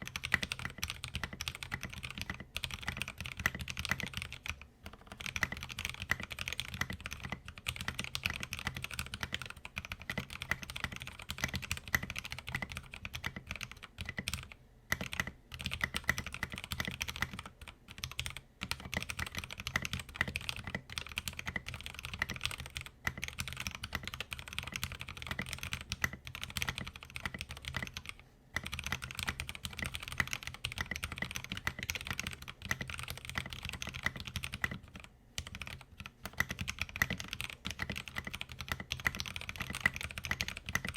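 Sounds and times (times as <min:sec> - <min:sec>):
fast typing on mechanical keyboard: 0:00.0 - 0:40.9.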